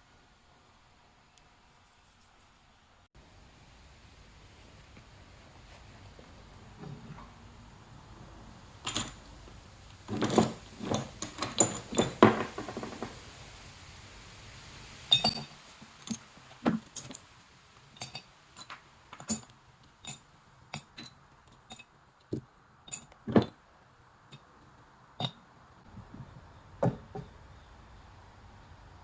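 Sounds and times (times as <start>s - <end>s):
metal clinks and knocks: 8.8s - 9.3s, 10.1s - 13.2s, 15.1s - 17.3s, 18.0s - 23.6s, 25.2s - 25.4s.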